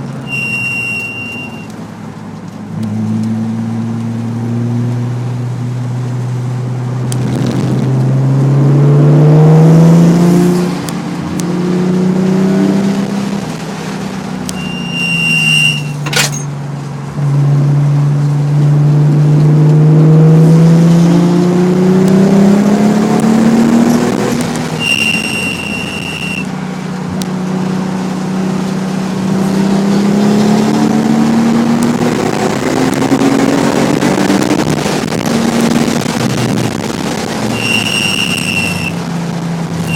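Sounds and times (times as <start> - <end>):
high steady squeal: 0.2 - 1.7, 14.5 - 16.5, 24.8 - 26.5, 37.4 - 39.0
car engine revving hard: 19.5 - 26.4.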